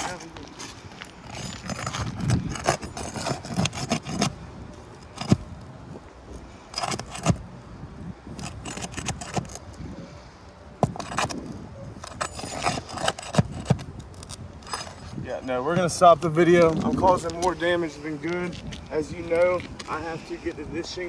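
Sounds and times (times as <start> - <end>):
metal tool scraping and clinking: 0.0 - 7.4, 8.3 - 10.0, 10.8 - 15.2
shingles tearing: 0.0 - 7.5, 8.3 - 9.9, 10.8 - 20.0.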